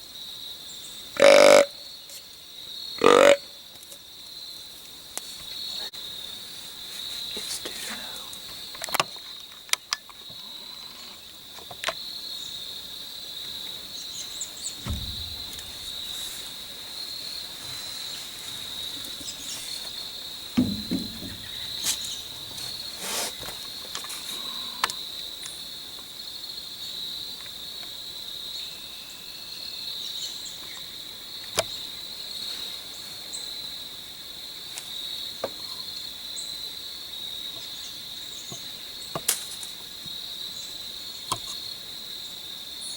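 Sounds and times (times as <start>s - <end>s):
crickets trilling: 0.0s - 42.9s
low thuds: 14.7s - 16.8s, 20.4s - 22.9s.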